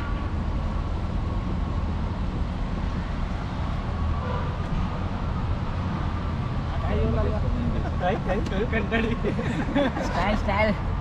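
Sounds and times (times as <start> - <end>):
wind noise on microphone: 0.0 - 6.8.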